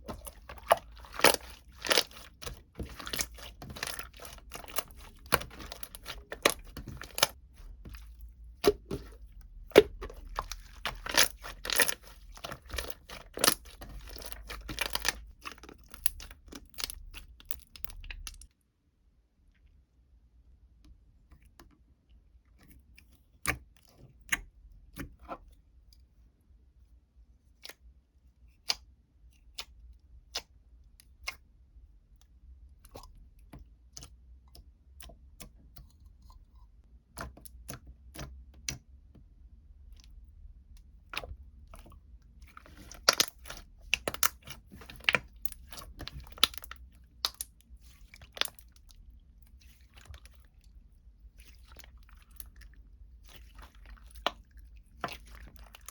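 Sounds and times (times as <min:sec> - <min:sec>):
crunching and chewing crisp food: 0:00.0 - 0:18.5, 0:39.8 - 0:55.9.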